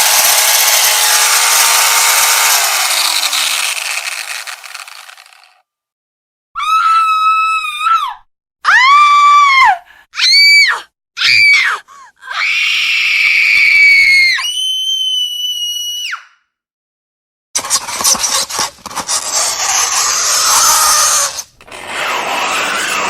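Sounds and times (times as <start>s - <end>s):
shrill piercing screams: 0.0s - 5.4s, 6.6s - 16.4s, 20.0s - 23.0s.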